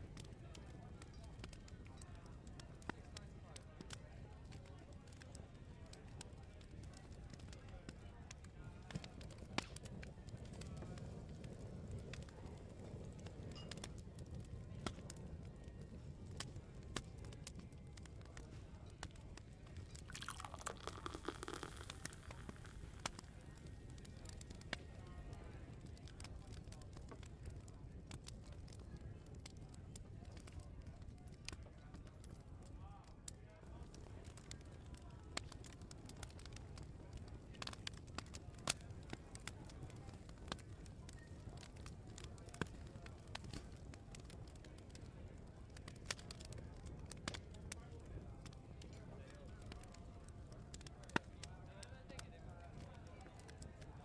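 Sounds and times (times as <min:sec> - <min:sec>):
wood fire crackling: 0:08.8 - 0:32.5, 0:33.6 - 0:52.2.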